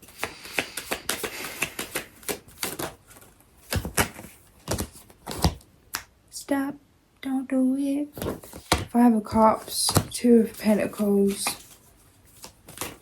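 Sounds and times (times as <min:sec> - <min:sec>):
cards being shuffled: 0:00.0 - 0:05.6, 0:08.2 - 0:13.0
cards tapped down: 0:00.1 - 0:03.0, 0:03.6 - 0:06.1.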